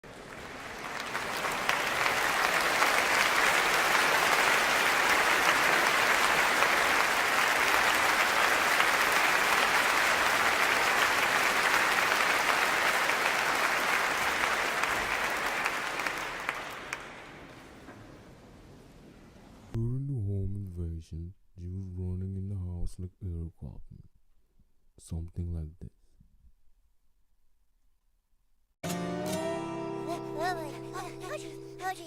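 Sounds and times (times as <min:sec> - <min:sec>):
audience applause: 0:00.0 - 0:17.7.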